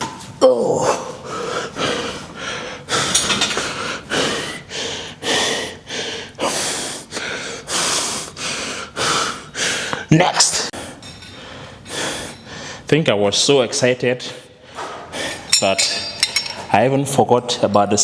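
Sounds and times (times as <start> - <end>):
man groaning: 0.4 - 1.2
man panting hard: 1.1 - 12.9.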